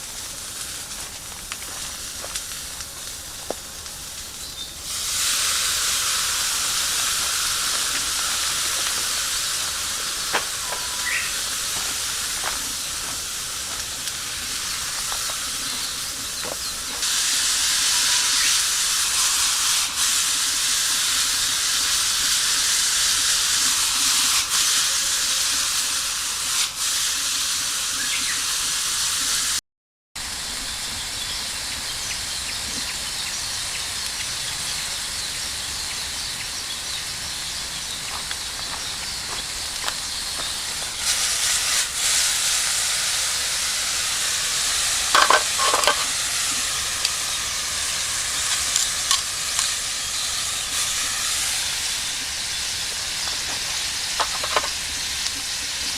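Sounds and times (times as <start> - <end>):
food sizzling in a frying pan: 0.0 - 29.6, 30.2 - 55.9
clinks or scrapes: 45.1 - 46.1, 54.2 - 54.8.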